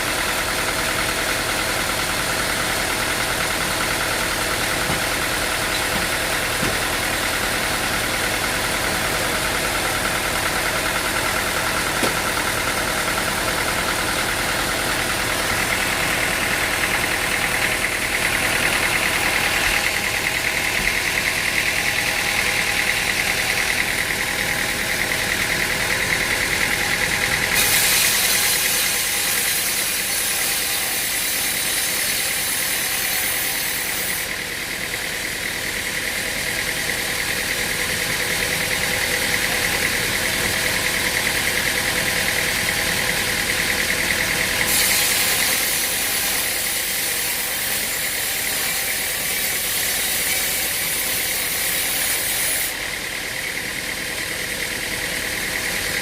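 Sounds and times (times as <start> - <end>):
engine-driven machine running: 0.0 - 56.0.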